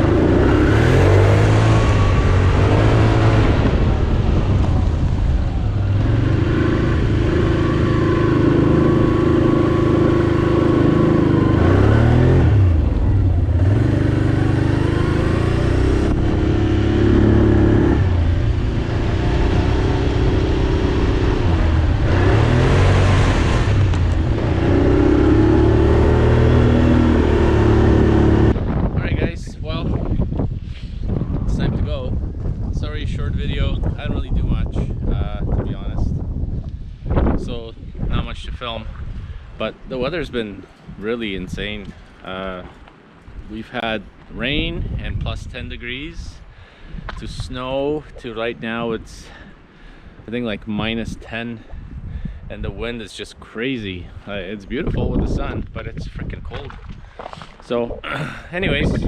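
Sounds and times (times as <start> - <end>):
atv engine revving: 0.0 - 28.7.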